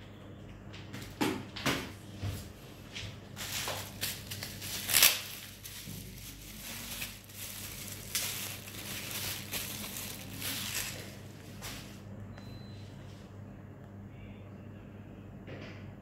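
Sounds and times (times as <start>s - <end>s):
packaging crinkling: 3.4s - 11.4s.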